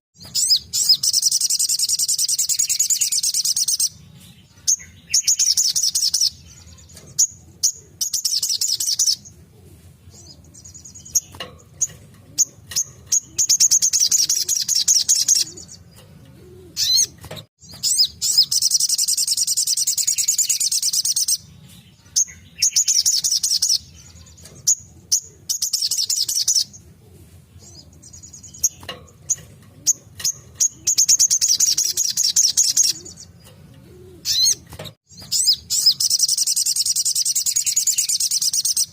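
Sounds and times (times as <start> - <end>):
bird chips: 0.2 - 26.8, 27.6 - 38.9
bird trilling song: 0.2 - 38.9.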